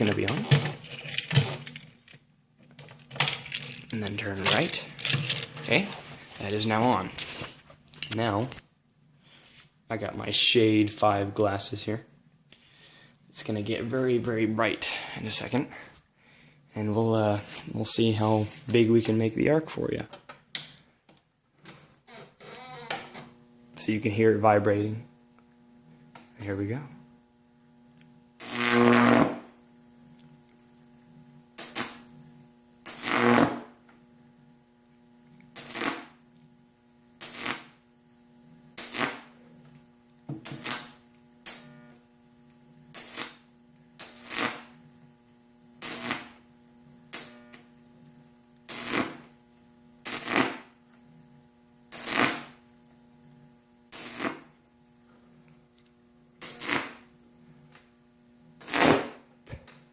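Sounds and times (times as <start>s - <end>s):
high-voltage arc bursts: 28.4s - 33.8s, 35.5s - 36.3s, 37.0s - 39.4s, 40.3s - 50.8s, 51.7s - 52.8s, 53.8s - 54.7s, 56.3s - 57.2s, 58.6s - 59.4s.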